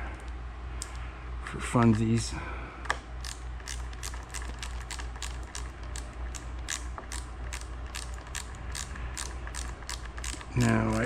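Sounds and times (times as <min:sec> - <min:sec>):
steady low hum: 0:00.0 - 0:11.0
socket ratchet clicking: 0:03.2 - 0:11.0.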